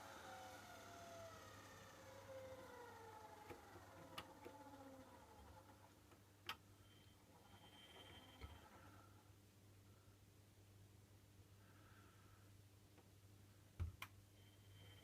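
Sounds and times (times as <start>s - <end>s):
washing machine drum whine: 0.0s - 6.0s.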